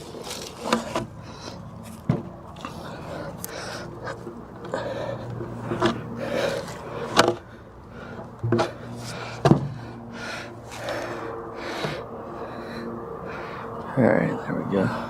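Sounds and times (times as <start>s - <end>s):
scraping and rustling: 0.0s - 4.4s
steady low hum: 0.0s - 15.0s.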